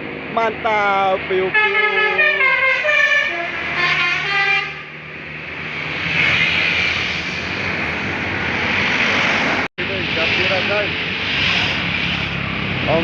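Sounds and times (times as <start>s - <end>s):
bus passing engine and tyres: 0.0s - 13.0s
multi-tone bus horn tune: 1.5s - 5.1s.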